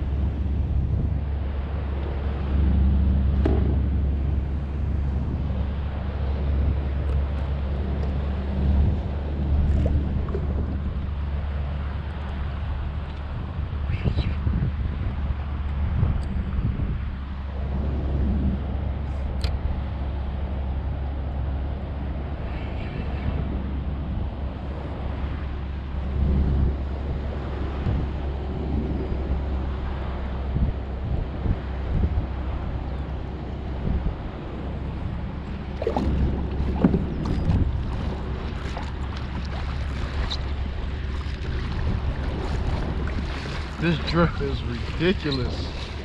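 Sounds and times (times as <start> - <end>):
water moving against kayak hull: 0.0 - 13.6, 21.3 - 46.0
wind buffeting microphone: 0.0 - 46.0.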